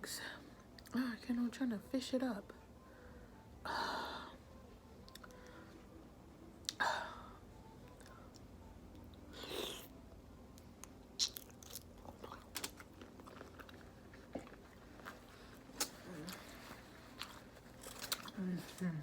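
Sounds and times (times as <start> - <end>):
wet chewing: 10.8 - 18.8.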